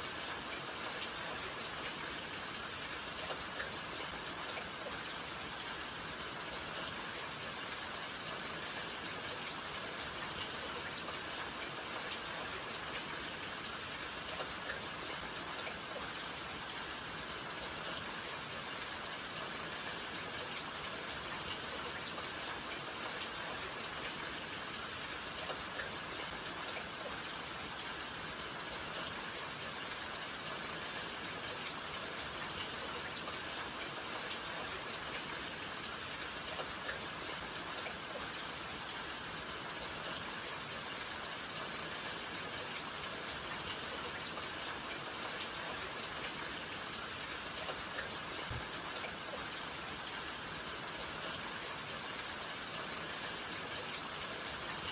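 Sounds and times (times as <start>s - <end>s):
steady rain hiss: 0.0s - 54.9s
raindrops tapping on surfaces: 0.2s - 54.9s.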